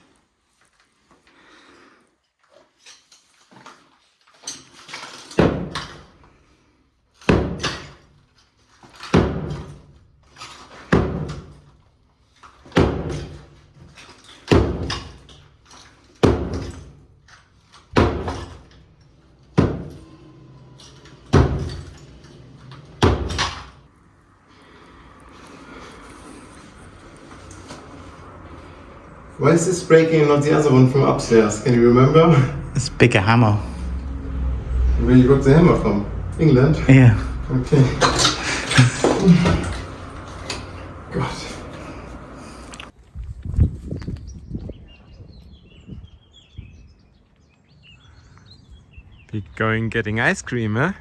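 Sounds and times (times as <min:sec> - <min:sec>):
heavy hammer blows: 0:24.4 - 0:42.8.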